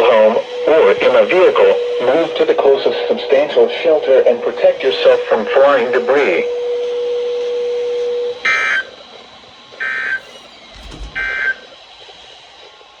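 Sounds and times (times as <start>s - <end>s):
low thump: 10.2s - 12.2s.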